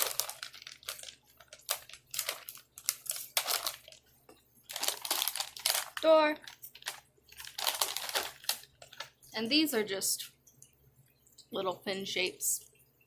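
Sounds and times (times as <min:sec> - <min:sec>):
plastic bag crinkling: 0:00.0 - 0:09.4.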